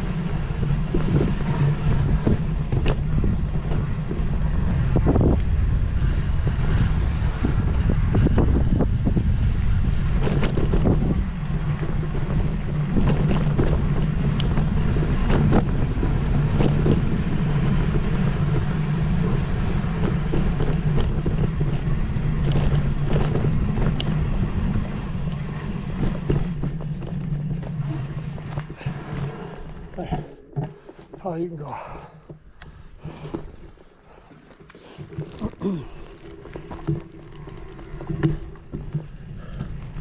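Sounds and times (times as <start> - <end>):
wind noise on microphone: 0.0 - 30.1
low engine drone: 0.0 - 40.0.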